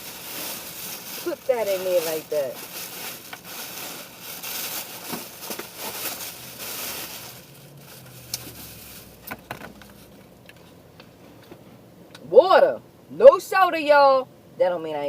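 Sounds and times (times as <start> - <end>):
food container packaging crinkling: 0.0 - 10.7.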